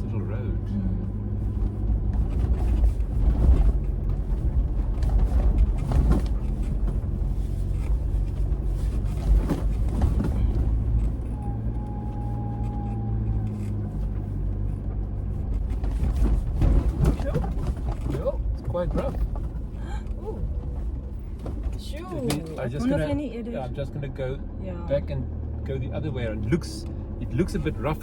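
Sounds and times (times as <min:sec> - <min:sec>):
vehicle engine hum: 0:00.0 - 0:28.0
knocks and bumps: 0:01.4 - 0:11.4, 0:14.8 - 0:23.3.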